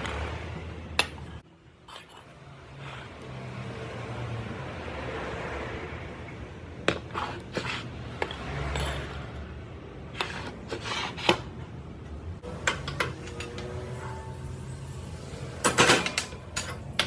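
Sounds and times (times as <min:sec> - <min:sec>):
metal parts clinking: 0:12.6 - 0:14.6, 0:15.6 - 0:17.0.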